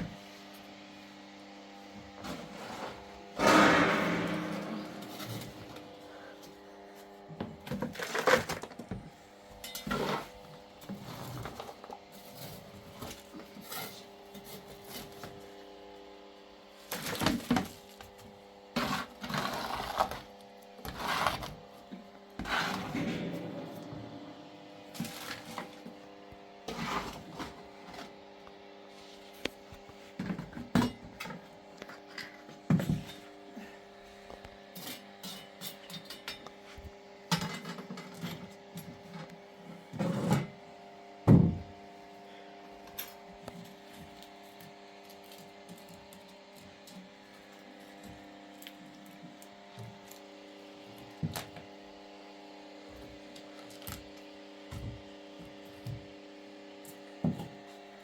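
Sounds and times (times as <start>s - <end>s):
steady multi-tone hum: 0.0s - 19.4s, 21.4s - 58.0s
objects knocking and clattering: 22.8s - 25.7s.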